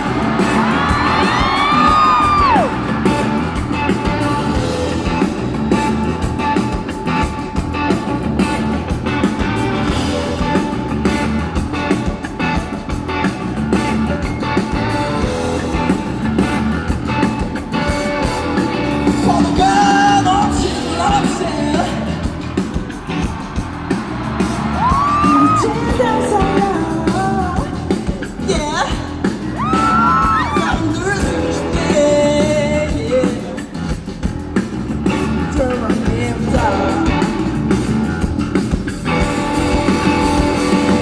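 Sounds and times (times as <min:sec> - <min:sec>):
electric guitar: 0:00.0 - 0:41.0
even drum beat: 0:00.0 - 0:41.0
rock band playing live: 0:00.0 - 0:41.0
person singing: 0:19.0 - 0:22.3, 0:24.8 - 0:33.8, 0:35.4 - 0:37.6.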